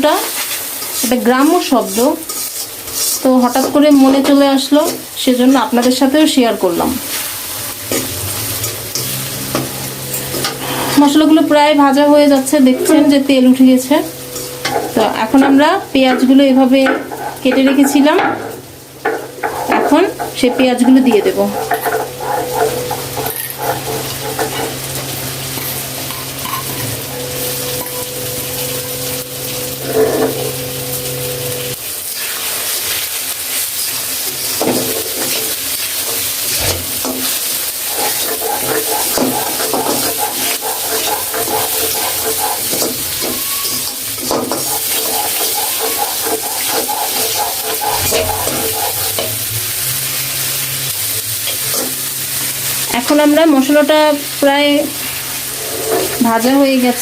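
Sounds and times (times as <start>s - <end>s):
onions sizzling in hot oil: 0.0s - 57.0s
spatula scraping pan: 0.2s - 5.1s, 7.9s - 28.1s, 29.7s - 30.8s, 32.1s - 49.7s, 54.8s - 57.0s.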